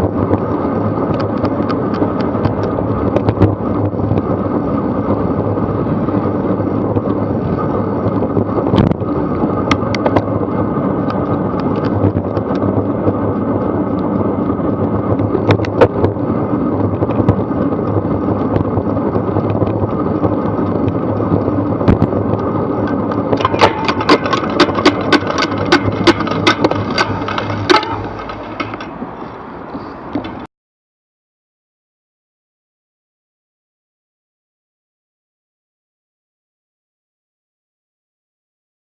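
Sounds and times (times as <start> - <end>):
bicycle tyre road rumble: 0.0 - 30.5
camera rattle: 22.8 - 29.0
sharp knocks from bumps: 23.4 - 29.1.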